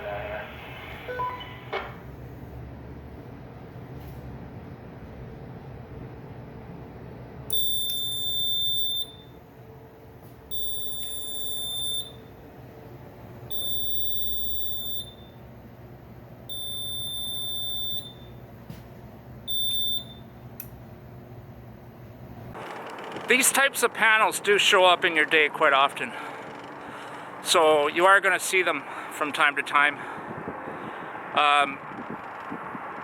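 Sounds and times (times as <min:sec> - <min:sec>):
steady low hum: 0:00.0 - 0:33.0
fire alarm panel beeps: 0:07.5 - 0:09.4, 0:10.5 - 0:12.3, 0:13.5 - 0:15.4, 0:16.5 - 0:18.4, 0:19.5 - 0:20.4.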